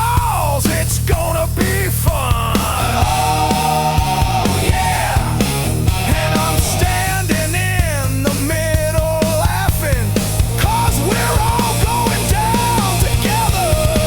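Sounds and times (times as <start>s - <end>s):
fast drumbeat: 0.0s - 14.0s
loud rock music: 0.0s - 14.0s
bending lead melody: 3.0s - 7.1s.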